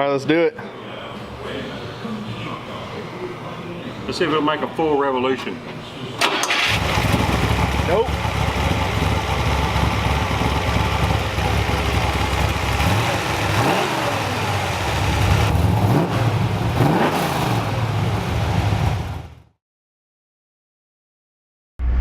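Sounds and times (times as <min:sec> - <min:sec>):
car engine revving: 0:06.5 - 0:19.4.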